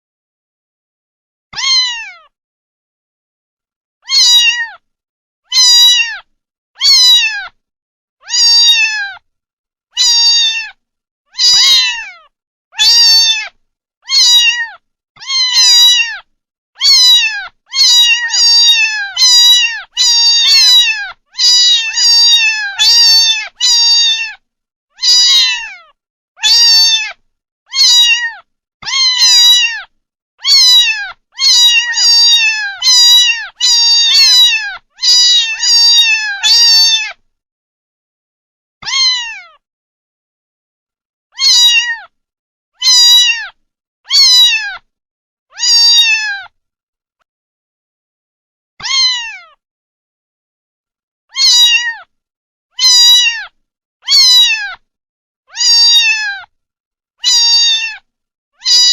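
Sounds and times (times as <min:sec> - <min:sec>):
kitten meowing: 0:01.6 - 0:02.3, 0:04.0 - 0:04.8, 0:05.5 - 0:07.6, 0:08.2 - 0:09.2, 0:10.0 - 0:24.4, 0:25.0 - 0:37.2, 0:38.8 - 0:39.6, 0:41.4 - 0:42.1, 0:42.8 - 0:44.9, 0:45.5 - 0:46.5, 0:48.8 - 0:49.6, 0:51.3 - 0:52.1, 0:52.7 - 0:54.8, 0:55.5 - 0:56.5, 0:57.2 - 0:58.9.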